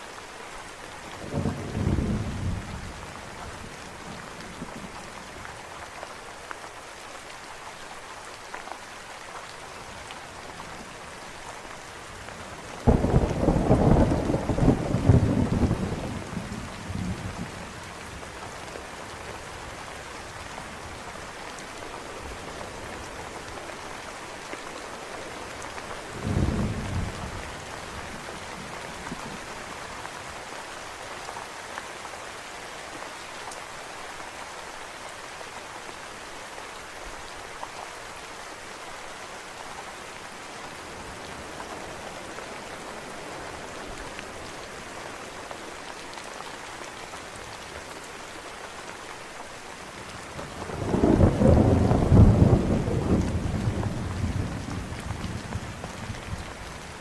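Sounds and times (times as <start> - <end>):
heavy rain falling: 0.0 - 57.0
thunder clap rumbling: 12.9 - 16.2, 50.6 - 55.4.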